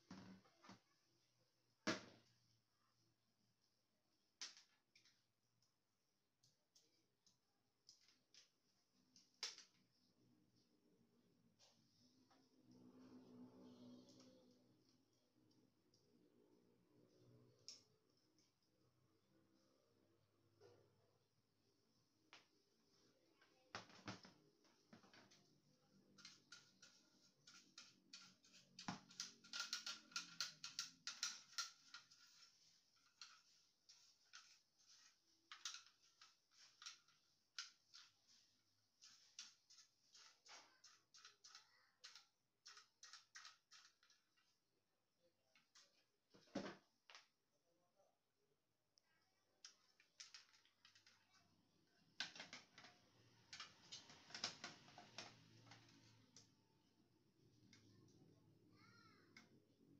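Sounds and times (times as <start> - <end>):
small plastic and metal parts clicking: 6.4 - 10.0, 17.5 - 18.6, 26.0 - 33.6, 34.3 - 38.2, 39.0 - 44.5, 49.6 - 51.4, 52.1 - 56.5.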